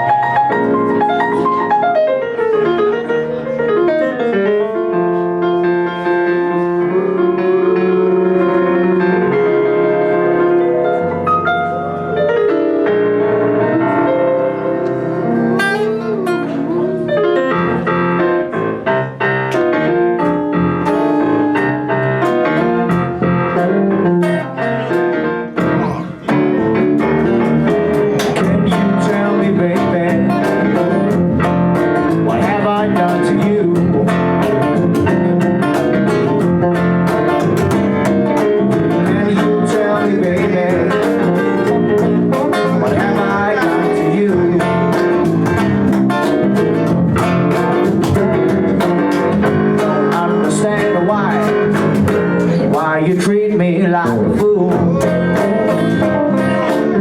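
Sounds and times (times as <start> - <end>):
live band playing: 0.0 - 57.0
drums with steady beat: 19.6 - 57.0.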